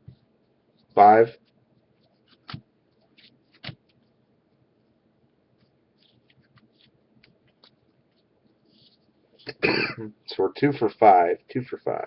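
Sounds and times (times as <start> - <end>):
cards being flipped through: 2.2 - 4.0, 5.6 - 9.6.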